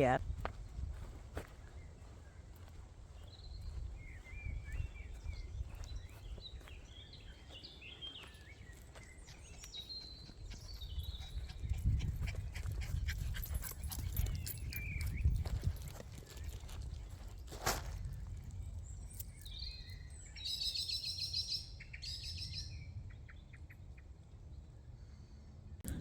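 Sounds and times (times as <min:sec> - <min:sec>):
wind rumbling on microphone: 0:00.0 - 0:20.3
footsteps crunching on ground: 0:00.2 - 0:11.1, 0:15.3 - 0:18.7.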